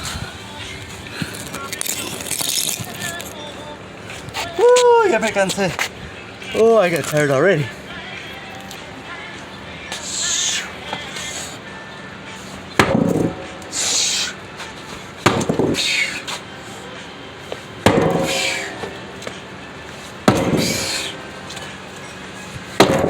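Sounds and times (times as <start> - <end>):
heavy hammer blows: 12.8 - 16.4, 17.5 - 19.4, 20.0 - 21.8, 22.7 - 23.0.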